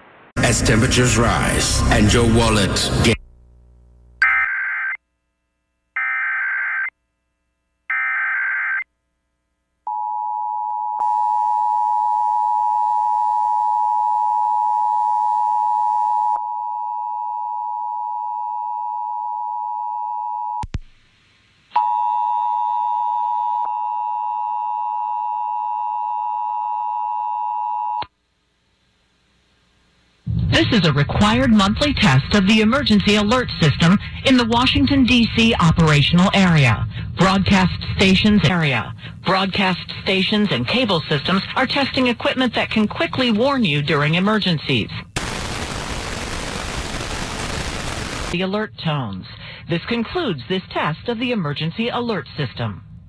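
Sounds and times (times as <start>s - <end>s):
warbling data bursts: 45.2s - 48.4s.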